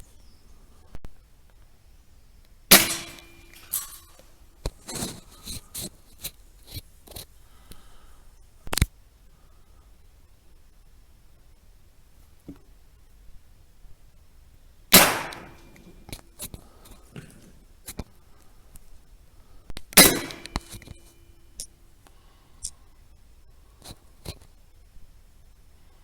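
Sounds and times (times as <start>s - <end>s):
rifle shots: 2.7s - 3.8s, 14.9s - 16.0s, 20.0s - 20.9s.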